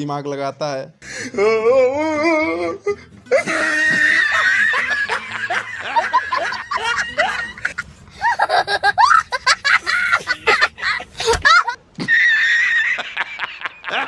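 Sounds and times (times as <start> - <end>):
people giggling: 3.3 - 14.0.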